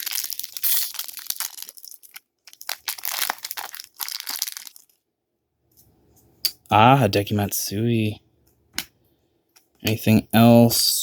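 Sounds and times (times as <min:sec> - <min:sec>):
card pack wrapper crinkling: 0:00.0 - 0:05.0.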